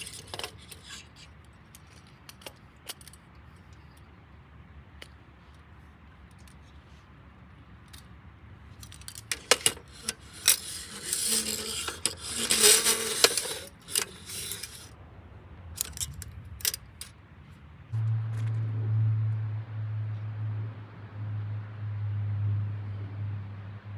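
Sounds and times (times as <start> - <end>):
small metal objects clinking: 0.0 - 1.1, 8.8 - 14.9, 15.8 - 16.8.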